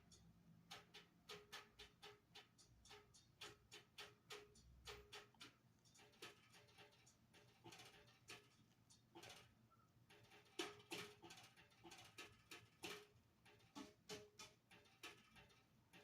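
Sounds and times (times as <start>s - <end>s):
fingers tapping rubber pads: 0.0s - 8.5s, 10.2s - 16.0s.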